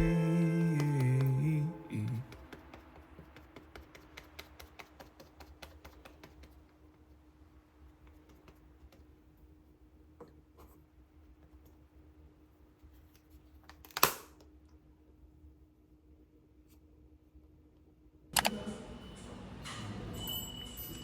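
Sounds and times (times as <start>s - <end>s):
faint steady hum: 0.0s - 13.4s
faint rapid clicks and taps: 2.0s - 9.5s.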